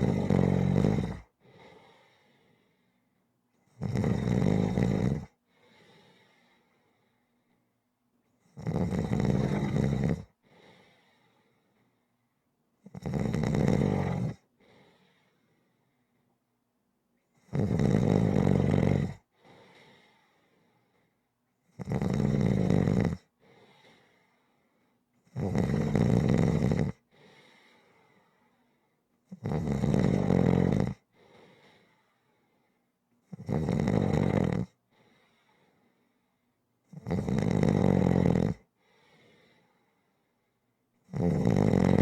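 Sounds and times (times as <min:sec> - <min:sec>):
person snoring: 0:00.0 - 0:01.3, 0:03.8 - 0:05.4, 0:08.6 - 0:10.3, 0:12.9 - 0:14.4, 0:17.5 - 0:19.2, 0:21.8 - 0:23.3, 0:25.3 - 0:27.0, 0:29.3 - 0:31.0, 0:33.3 - 0:34.7, 0:36.9 - 0:38.6, 0:41.1 - 0:42.0
soft breath: 0:01.4 - 0:03.3, 0:05.4 - 0:07.8, 0:10.4 - 0:12.2, 0:14.6 - 0:16.4, 0:19.3 - 0:21.3, 0:23.4 - 0:25.0, 0:27.0 - 0:29.0, 0:31.1 - 0:32.9, 0:34.8 - 0:36.5, 0:38.8 - 0:40.6.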